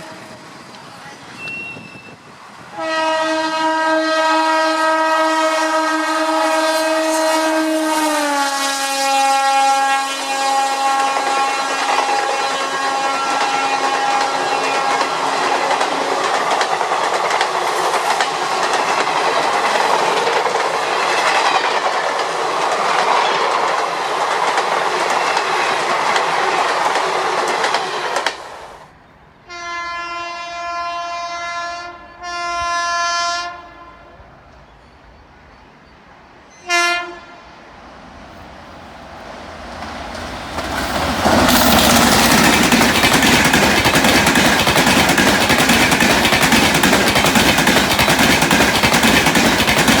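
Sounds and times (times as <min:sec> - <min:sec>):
train rumbling past: 0:00.0 - 0:50.0
locomotive horn blasts: 0:02.7 - 0:15.6, 0:29.4 - 0:34.3, 0:36.6 - 0:37.4
wheel clatter over rail joints: 0:39.8 - 0:50.0.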